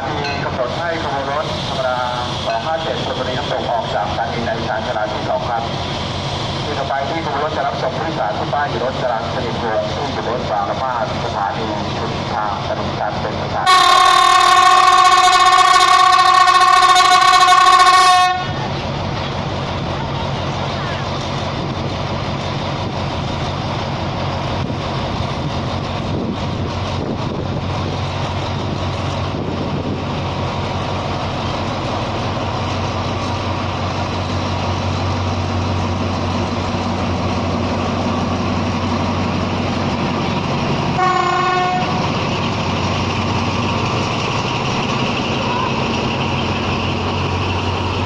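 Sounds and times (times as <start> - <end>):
diesel locomotive engine drone: 0.0 - 48.0
train horn blast: 13.6 - 18.6, 40.9 - 42.1.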